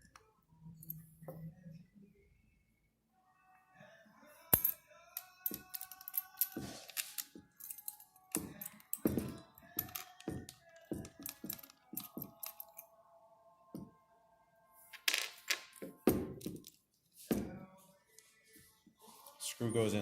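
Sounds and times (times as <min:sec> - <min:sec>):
small metal parts clinking: 0:04.5 - 0:12.8.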